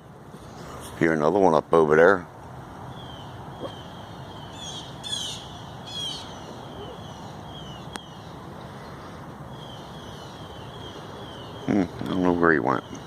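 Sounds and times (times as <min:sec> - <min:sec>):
steady background hum: 0:00.0 - 0:13.0
harsh bird calls: 0:02.8 - 0:13.0.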